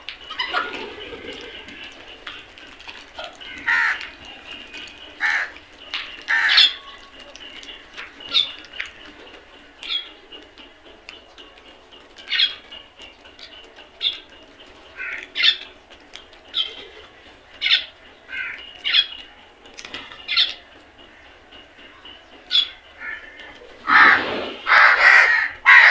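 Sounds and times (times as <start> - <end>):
crows cawing: 0.3 - 6.9, 14.9 - 15.6, 17.6 - 19.1, 22.5 - 25.9.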